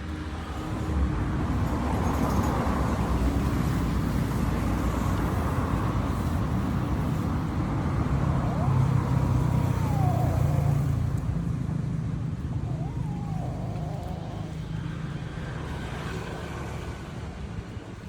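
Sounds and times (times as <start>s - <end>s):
drawn-out rising and falling calls: 6.7s - 17.4s.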